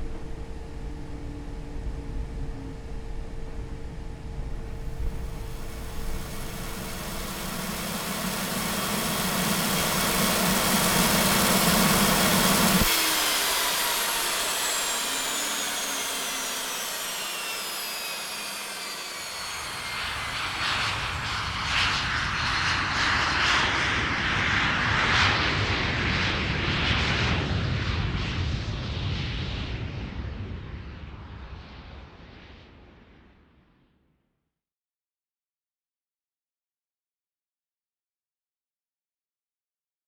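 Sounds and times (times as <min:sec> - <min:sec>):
jet engines rumble and whine: 0:00.0 - 0:32.8
rushing jet noise: 0:04.8 - 0:23.0.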